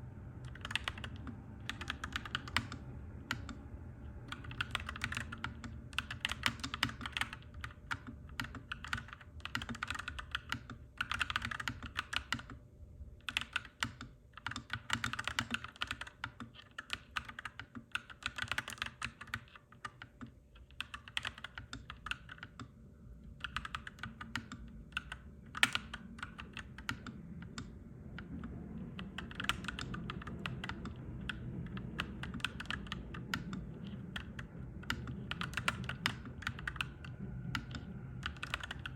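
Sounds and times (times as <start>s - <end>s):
low background rumble: 0.0s - 13.5s, 21.4s - 38.9s
mechanical keyboard typing: 0.4s - 3.6s, 4.3s - 12.6s, 13.2s - 22.7s, 23.4s - 38.9s.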